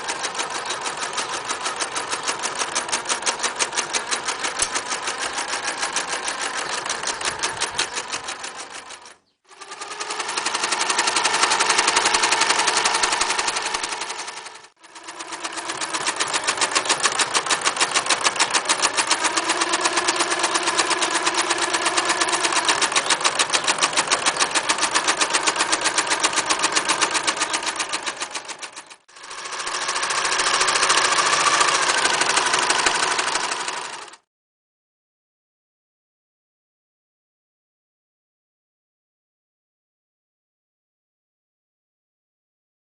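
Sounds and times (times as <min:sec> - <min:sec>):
sewing machine stitching: 0:00.0 - 0:34.2.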